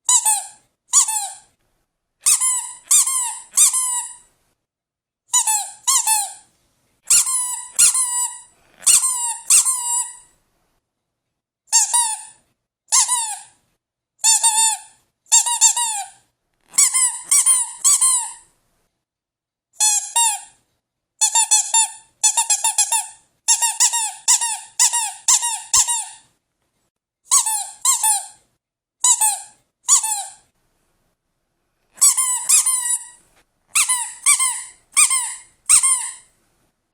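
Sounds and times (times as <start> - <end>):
squeaky dog toy squeaking: 0.0 - 1.5, 2.2 - 4.3, 5.3 - 6.5, 7.1 - 10.4, 11.7 - 13.6, 14.2 - 18.5, 19.8 - 20.6, 21.2 - 26.3, 27.3 - 28.4, 29.0 - 30.5, 32.0 - 36.3.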